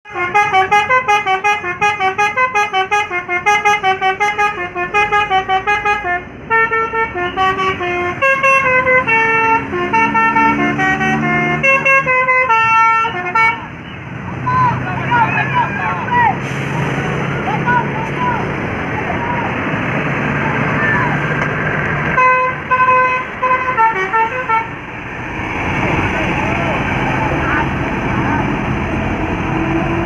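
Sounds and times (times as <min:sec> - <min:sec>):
multi-tone air horn melody: 0:00.1 - 0:13.8, 0:22.2 - 0:24.8.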